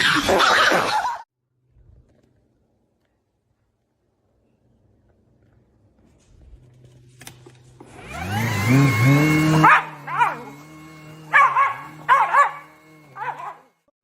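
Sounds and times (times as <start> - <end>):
loud whirring rising in pitch: 7.8 - 13.9
dog barking: 9.6 - 10.5, 11.3 - 13.8.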